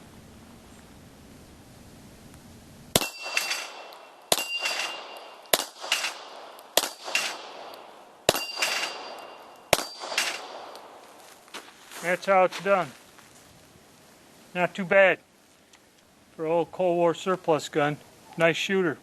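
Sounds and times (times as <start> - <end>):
pistol shots: 2.9 - 11.0
steel plate clanging: 3.0 - 10.6.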